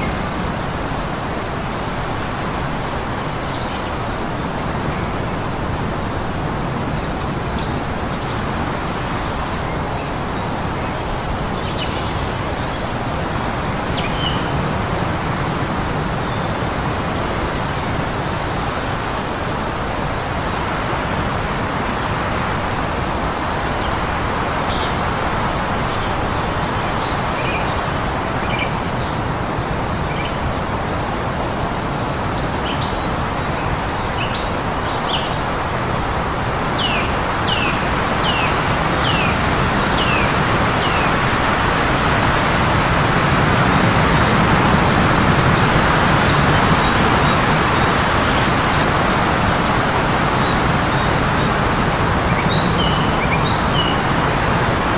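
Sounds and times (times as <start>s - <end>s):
strong wind blowing: 4.4s - 54.9s
birds chirping: 32.3s - 54.9s.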